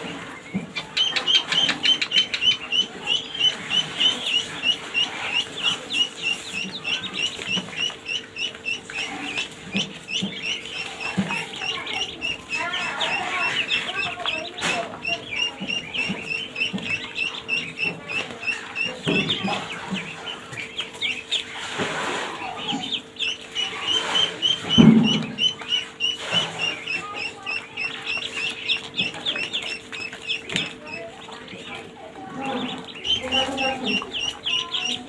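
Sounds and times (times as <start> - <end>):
ducklings peeping: 0.0 - 35.0.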